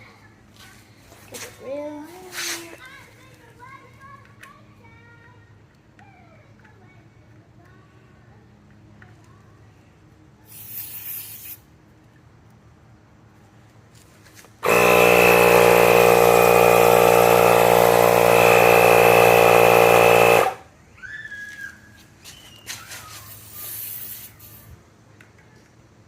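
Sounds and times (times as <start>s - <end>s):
air hissing: 10.5s - 11.7s, 23.3s - 24.8s
tyre pump motor buzzing: 14.6s - 20.6s.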